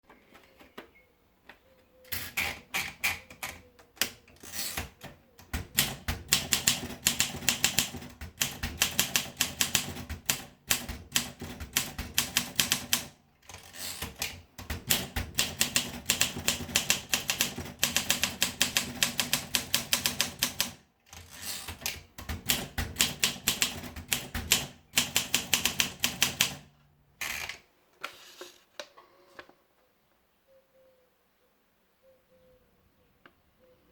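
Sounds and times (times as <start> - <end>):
typewriter keystroke clacks: 2.3 - 27.5.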